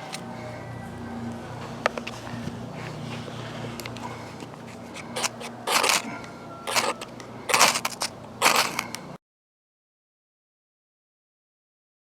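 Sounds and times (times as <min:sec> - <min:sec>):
striker scraping a firesteel: 0:02.8 - 0:09.0.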